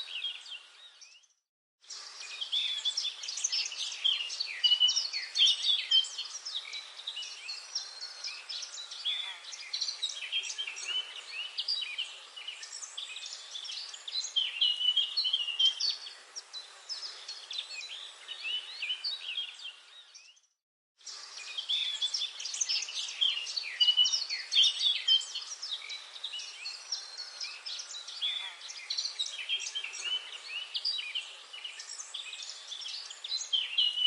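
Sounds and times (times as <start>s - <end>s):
songbirds chirping and trilling: 0.0s - 34.0s
faint hiss: 1.8s - 20.1s, 21.0s - 34.0s.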